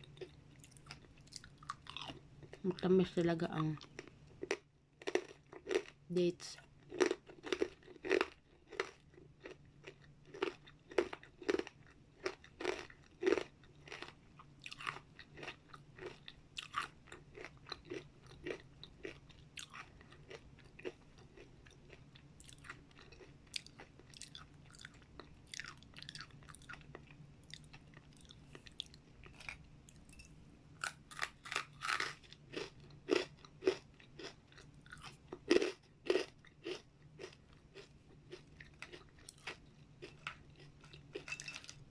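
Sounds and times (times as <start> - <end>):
chewing crunchy chips: 0.0 - 30.1, 30.8 - 41.9.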